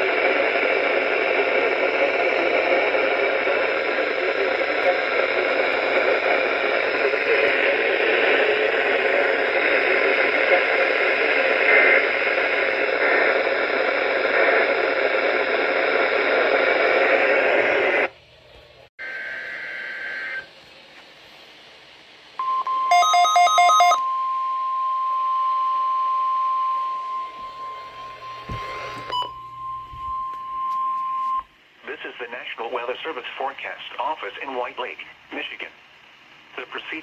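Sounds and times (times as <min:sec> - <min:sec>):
radio static hiss: 0:00.0 - 0:18.2, 0:31.7 - 0:37.0
short tone: 0:22.4 - 0:31.5
steady warning alarm tone: 0:22.4 - 0:31.5.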